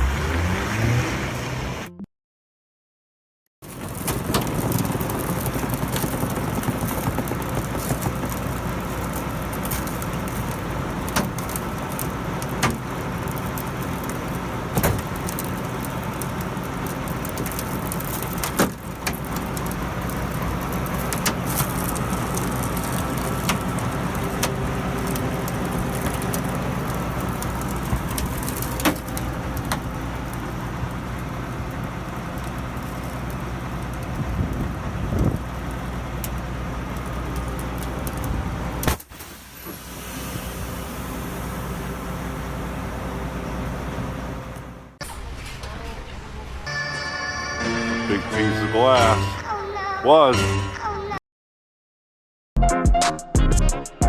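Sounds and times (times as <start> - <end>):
engine running steadily: 3.6 - 46.8.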